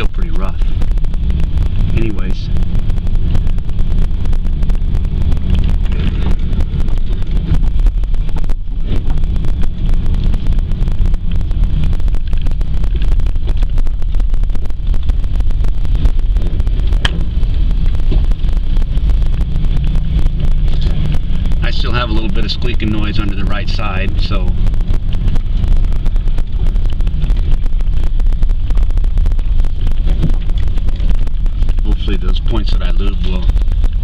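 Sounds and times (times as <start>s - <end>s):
van driving on bumpy road: 0.0s - 34.0s
wind buffeting microphone: 0.0s - 34.0s
small rattles and knocks: 24.2s - 32.2s.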